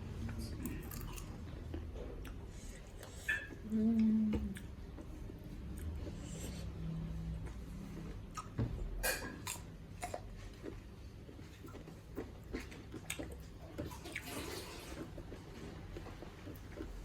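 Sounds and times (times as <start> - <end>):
wet chewing and lip smacks: 9.4 - 14.3.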